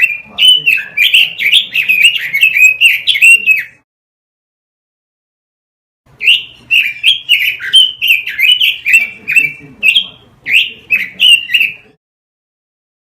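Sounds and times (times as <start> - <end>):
bird whistled chirps: 0.0 - 3.8, 6.2 - 12.0.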